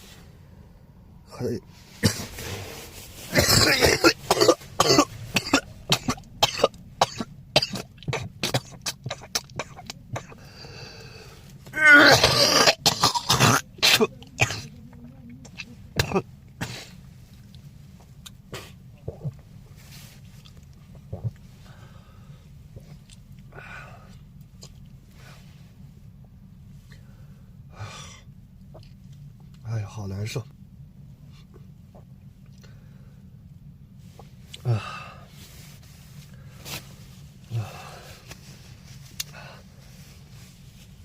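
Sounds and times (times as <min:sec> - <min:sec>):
throat clearing: 0:03.3 - 0:10.5
young man coughing hard: 0:03.3 - 0:10.5, 0:11.8 - 0:14.8, 0:16.0 - 0:16.9.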